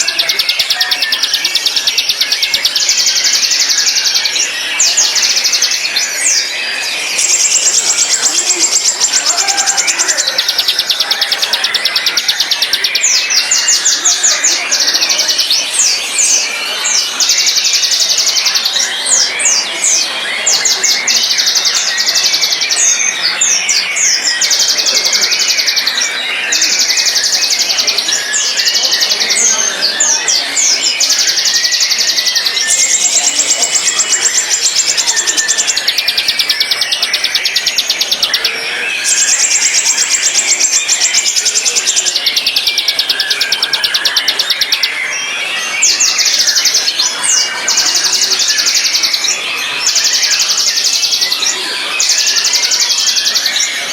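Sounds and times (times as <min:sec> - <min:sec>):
bird singing rattling trills: 0:00.0 - 0:53.9.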